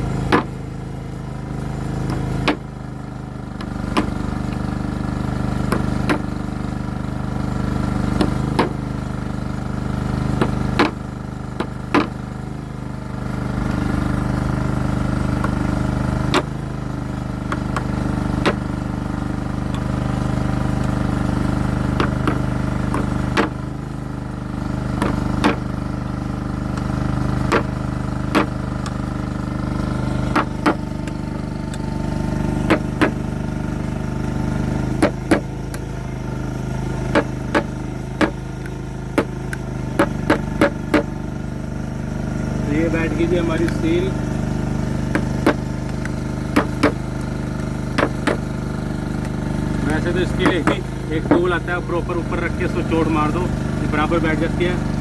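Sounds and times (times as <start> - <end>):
low engine-like hum: 0.0 - 55.0
sharp tapping knocks on metal: 0.3 - 0.6, 2.0 - 2.6, 5.7 - 6.3, 8.2 - 8.8, 10.4 - 11.0, 11.6 - 12.2, 16.2 - 16.6, 17.5 - 18.6, 21.9 - 23.6, 27.5 - 29.0, 30.3 - 31.8, 32.7 - 33.2, 35.0 - 35.8, 37.1 - 41.1, 45.1 - 47.3, 48.0 - 48.4, 50.4 - 51.5.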